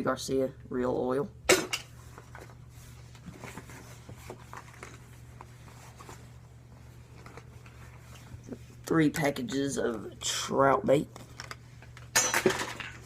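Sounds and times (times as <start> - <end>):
steady low hum: 0.0 - 13.0
rustling of packages: 1.9 - 8.6.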